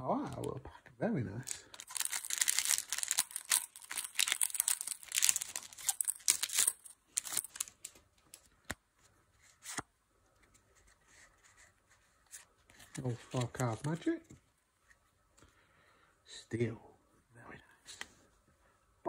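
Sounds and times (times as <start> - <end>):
foil wrapper tearing and crinkling: 1.8 - 8.0.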